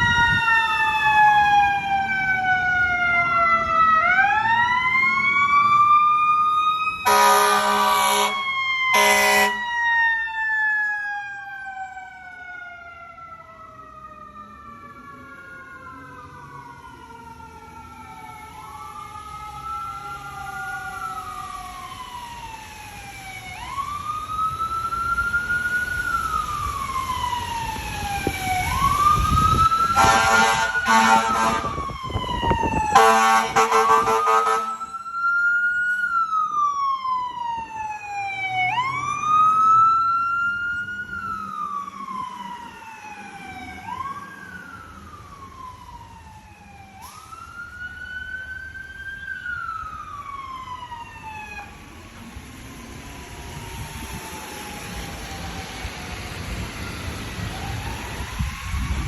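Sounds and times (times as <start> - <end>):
fire truck siren wailing: 0.0 - 59.0
loud air horn blasts: 7.0 - 9.7, 30.0 - 31.8, 32.9 - 34.9.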